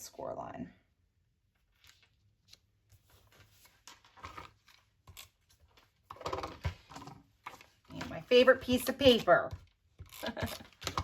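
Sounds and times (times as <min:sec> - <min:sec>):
paper rustling: 0:01.7 - 0:08.2.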